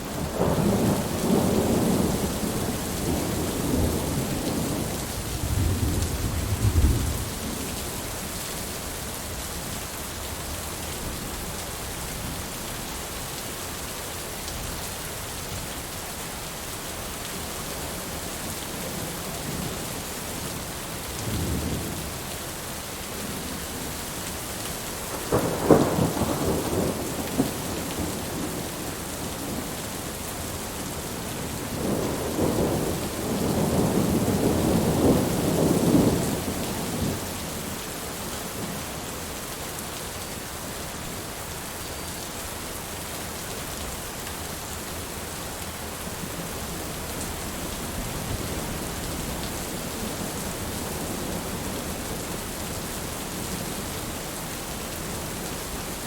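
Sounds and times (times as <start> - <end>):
steady rain falling: 0.0 - 56.0
thunder rumbling: 0.2 - 7.4, 25.2 - 29.8, 31.4 - 37.3.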